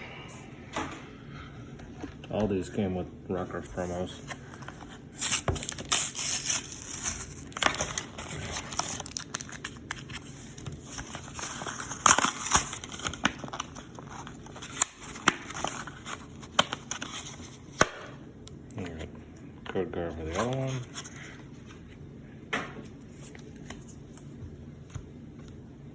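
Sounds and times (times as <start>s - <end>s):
card packaging crinkling and tearing: 3.3s - 18.1s, 20.0s - 21.9s, 22.9s - 25.0s
wrapper crackles and clicks: 4.6s - 18.0s.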